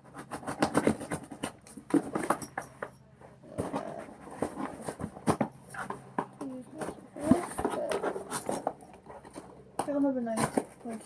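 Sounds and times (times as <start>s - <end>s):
hands scraping cardboard: 0.0s - 2.3s, 3.5s - 9.5s.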